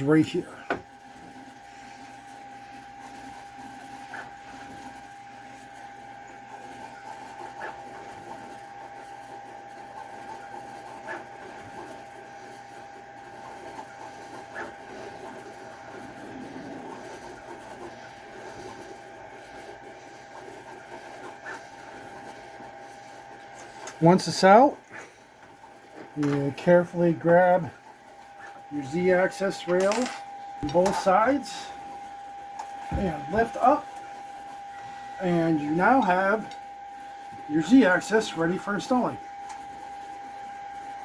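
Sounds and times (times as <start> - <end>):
hex key scraping metal: 25.7 - 39.8.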